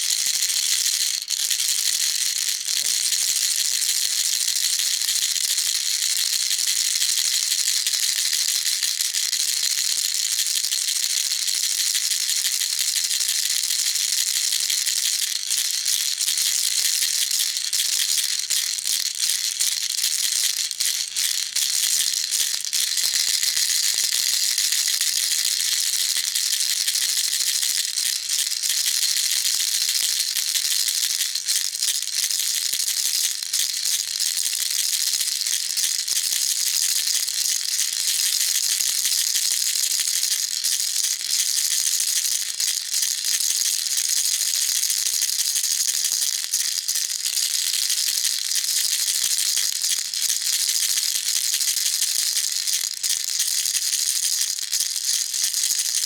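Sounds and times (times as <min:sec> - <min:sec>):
baby rattle shaking: 0:20.2 - 0:36.4, 0:37.1 - 0:56.0.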